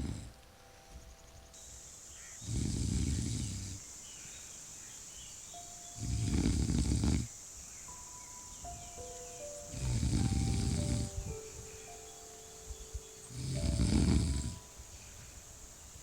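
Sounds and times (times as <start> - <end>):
person snoring: 2.4 - 3.8, 6.0 - 7.3, 9.7 - 11.2, 13.3 - 14.6.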